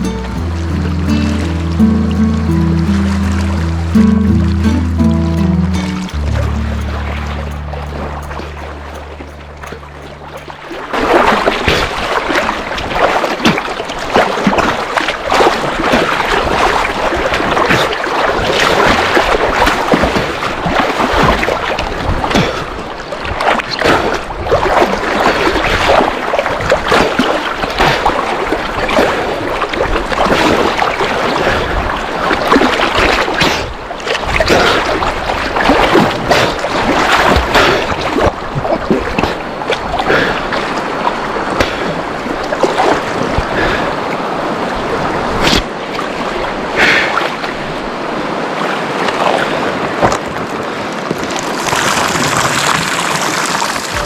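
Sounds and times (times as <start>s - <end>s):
river water rushing: 0.0s - 21.8s, 39.0s - 54.0s
water splashing: 0.0s - 21.8s, 50.1s - 54.0s.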